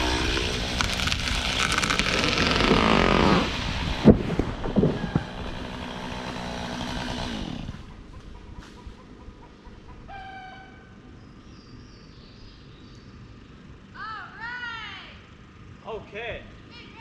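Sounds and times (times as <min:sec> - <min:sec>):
chainsaw cutting and idling: 0:00.0 - 0:08.0
wood cracks and thumps: 0:00.3 - 0:03.2, 0:04.0 - 0:05.5.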